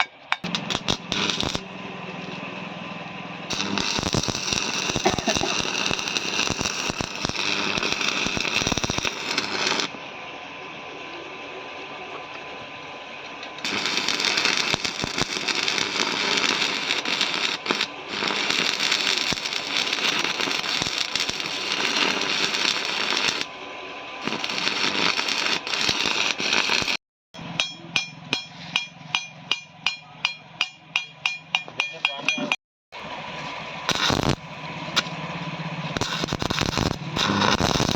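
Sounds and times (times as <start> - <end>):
arc welding crackle and sizzle: 0.4 - 1.7, 3.5 - 10.0, 13.6 - 23.5, 24.2 - 27.0, 33.9 - 35.1, 36.0 - 37.9
ringing metallic taps: 27.4 - 32.6.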